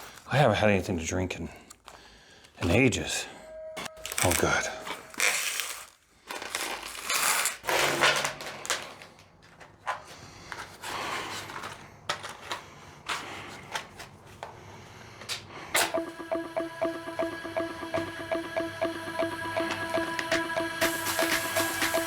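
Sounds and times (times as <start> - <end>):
rustling and crinkling handling: 4.0 - 14.6.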